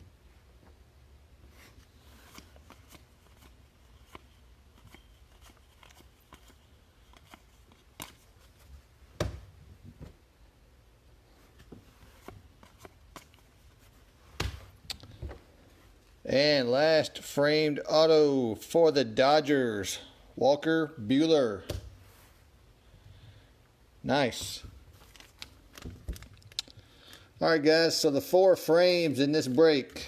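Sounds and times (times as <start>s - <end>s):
cards rustling and clicking: 1.8s - 8.8s, 11.6s - 15.2s, 24.8s - 27.2s.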